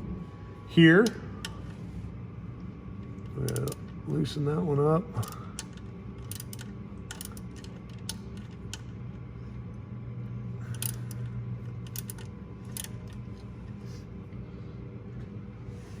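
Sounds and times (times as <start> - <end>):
low hum: 0.0 - 16.0
socket wrench clicks: 5.2 - 8.9, 10.7 - 11.2, 11.8 - 13.2.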